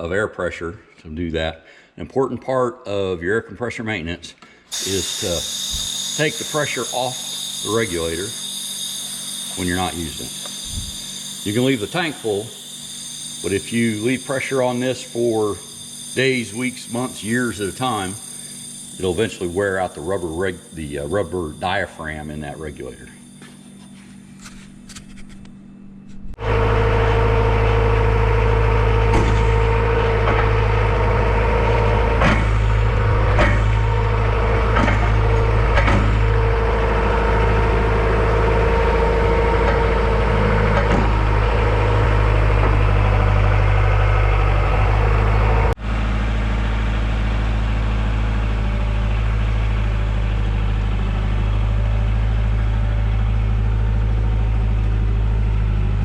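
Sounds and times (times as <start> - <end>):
engine humming: 26.4 - 56.0
sharp knocks and clicks: 34.7 - 36.2.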